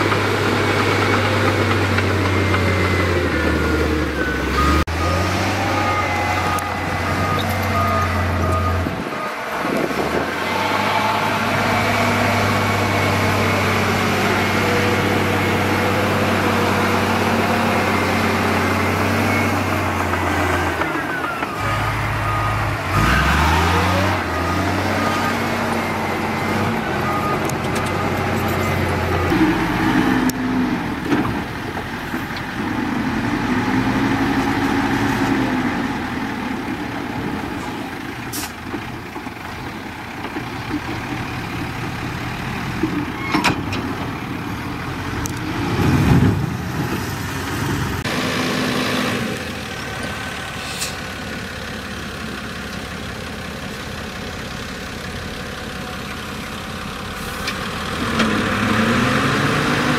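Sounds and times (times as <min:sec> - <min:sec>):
heavy diesel engines revving: 0:00.0 - 0:59.9
reversing beeper: 0:01.4 - 0:29.3.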